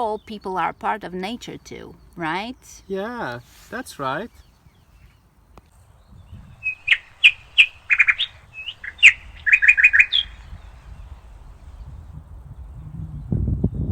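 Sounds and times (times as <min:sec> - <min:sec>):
small bird chirping and trilling: 0:06.0 - 0:12.0.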